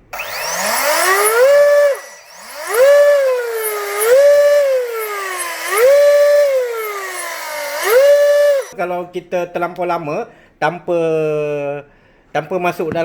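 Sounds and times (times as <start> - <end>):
electric motor revving whine: 0.0 - 8.8.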